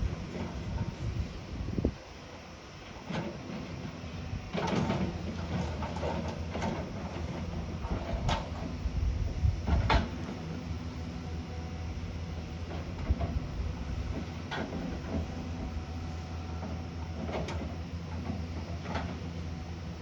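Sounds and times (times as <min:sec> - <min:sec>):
heavy diesel engine running: 0:00.0 - 0:20.0.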